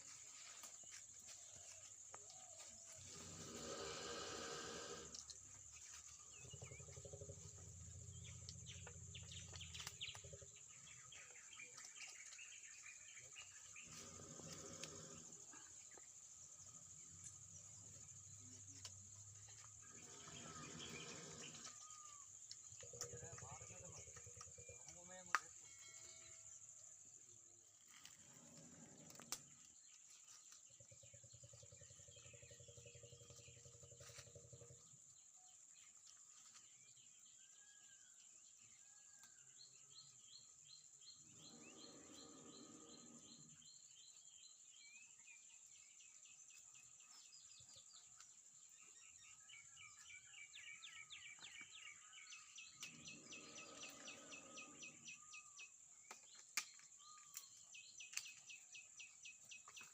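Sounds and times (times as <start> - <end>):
birds chirping: 2.4 - 26.5, 40.4 - 59.9.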